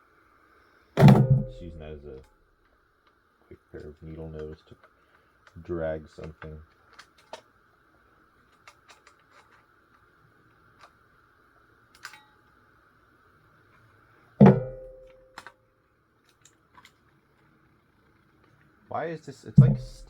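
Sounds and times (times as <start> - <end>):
ringing metallic twang: 1.0 - 2.1, 14.4 - 15.4, 19.6 - 20.0.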